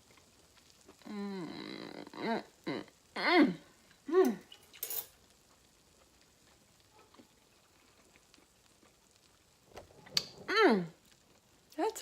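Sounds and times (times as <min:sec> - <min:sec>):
woman humming mmm: 0:00.9 - 0:04.5, 0:10.4 - 0:11.0.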